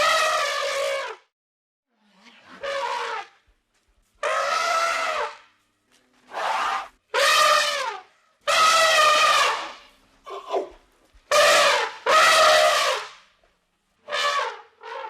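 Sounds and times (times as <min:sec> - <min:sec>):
elephant trumpeting: 0:00.0 - 0:01.2, 0:02.2 - 0:03.4, 0:04.2 - 0:05.5, 0:06.3 - 0:13.1, 0:14.0 - 0:15.0.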